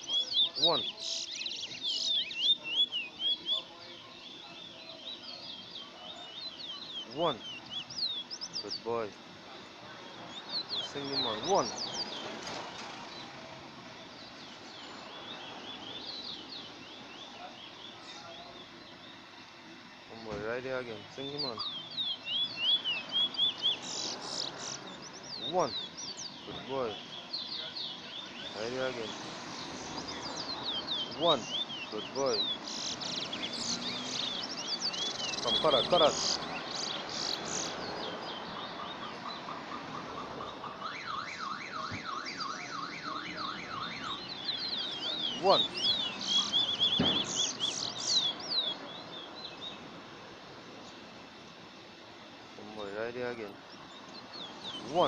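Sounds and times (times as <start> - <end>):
high bird chirps: 0.0 - 55.0
car alarm beeps: 1.7 - 9.4, 21.3 - 24.6, 34.3 - 48.9
warbling car alarm siren: 38.1 - 47.0.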